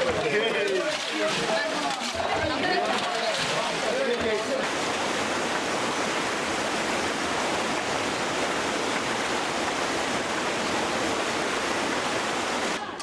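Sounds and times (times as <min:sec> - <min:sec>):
floodwater rushing: 0:00.0 - 0:13.0.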